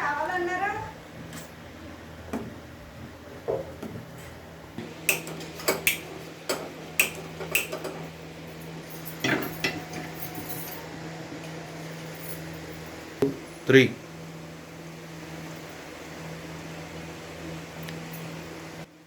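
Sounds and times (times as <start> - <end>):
steady low hum: 0.0 - 19.0
metal utensils and pans clinking: 8.9 - 10.9.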